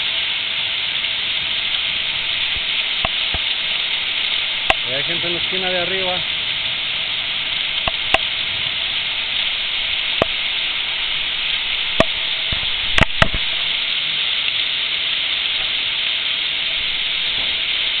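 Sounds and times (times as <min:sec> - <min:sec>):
heavy rain pouring: 0:00.0 - 0:18.0
sharp taps near microphone: 0:04.6 - 0:04.8, 0:07.8 - 0:08.3, 0:12.0 - 0:13.4.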